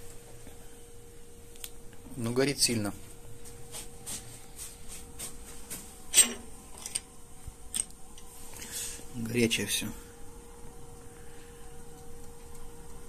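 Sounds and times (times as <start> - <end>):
faint electrical hum: 0.0 - 13.0
wood fire crackling: 7.5 - 13.0.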